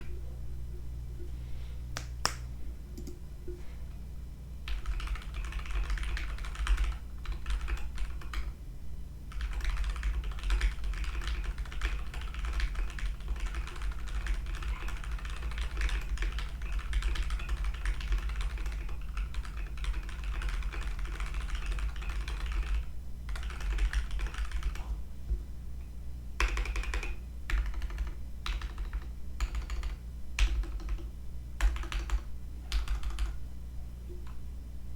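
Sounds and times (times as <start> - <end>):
steady low hum: 0.0 - 34.9
mechanical keyboard typing: 4.7 - 8.5, 9.3 - 24.9, 26.4 - 33.4.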